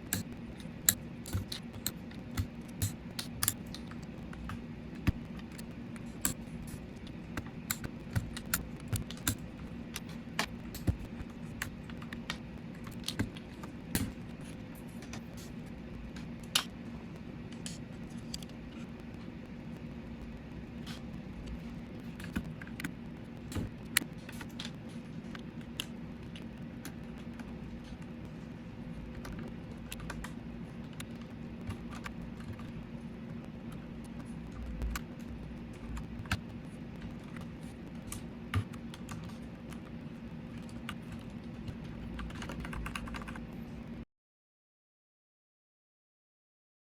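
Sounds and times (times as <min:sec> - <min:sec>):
keycaps clicking and clacking: 0:00.0 - 0:12.3, 0:40.6 - 0:43.4
steady low hum: 0:00.0 - 0:44.0.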